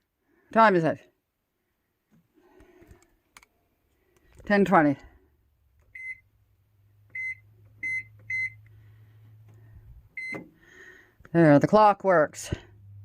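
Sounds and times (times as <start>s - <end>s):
microwave keypad beeps: 5.9s - 6.3s, 7.1s - 8.6s, 10.2s - 10.4s
low hum: 12.6s - 13.0s.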